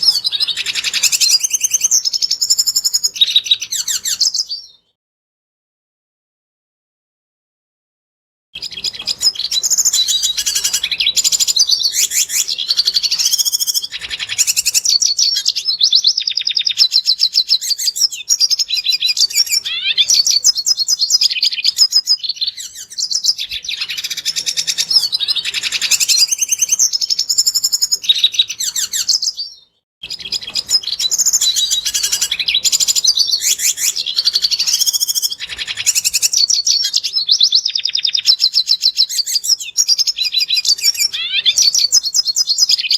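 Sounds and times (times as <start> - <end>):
bird twittering song: 0.0 - 5.0, 8.6 - 42.9.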